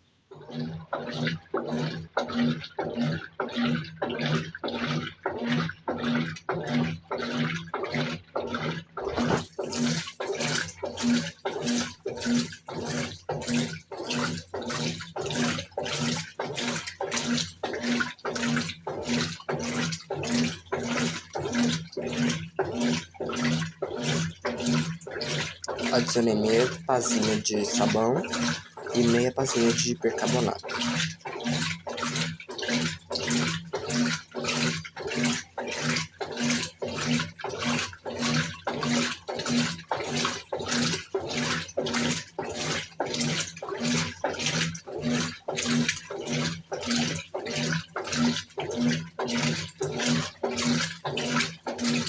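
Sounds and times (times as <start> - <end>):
washing machine motor humming: 0.3 - 52.0
water churning and splashing: 0.3 - 52.0.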